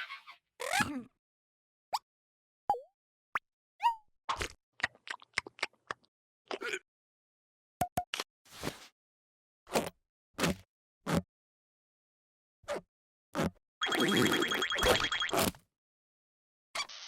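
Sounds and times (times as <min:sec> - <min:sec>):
cartoon plops and pops: 0:13.8 - 0:15.5.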